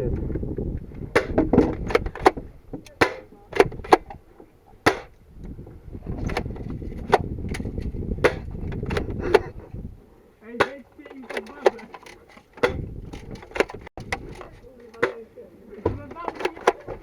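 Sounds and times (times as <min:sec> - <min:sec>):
sharp cracks: 0:01.1 - 0:04.2, 0:04.8 - 0:05.2, 0:06.2 - 0:09.6, 0:10.5 - 0:15.3.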